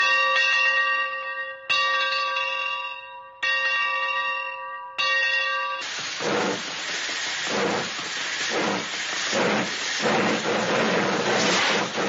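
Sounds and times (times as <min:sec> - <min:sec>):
large bell ringing: 0:00.0 - 0:05.8
loud rushing noise with rumbling: 0:05.8 - 0:12.0.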